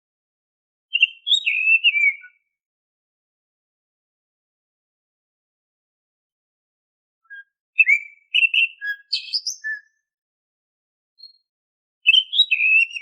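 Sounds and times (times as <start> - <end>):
bird singing whistled notes: 0.9 - 2.6, 7.2 - 10.2, 11.2 - 13.0.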